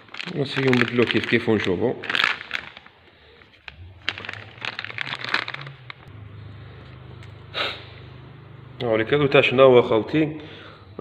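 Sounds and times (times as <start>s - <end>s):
rustling of handled parts: 0.0s - 6.1s
steady low hum: 3.1s - 11.0s.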